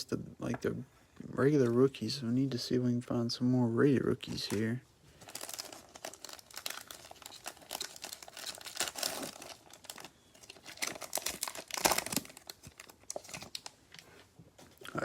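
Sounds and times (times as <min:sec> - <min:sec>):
cellophane wrapper crinkling: 0:04.3 - 0:14.2.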